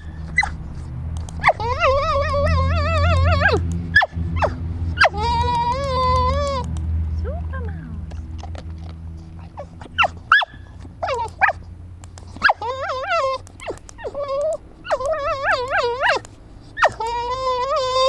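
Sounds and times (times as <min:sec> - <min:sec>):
dog whining: 0:00.0 - 0:00.6, 0:01.3 - 0:06.7, 0:09.3 - 0:11.7, 0:12.3 - 0:18.0
dog yelping: 0:00.0 - 0:00.6, 0:01.3 - 0:06.7, 0:09.3 - 0:11.7, 0:12.3 - 0:18.0.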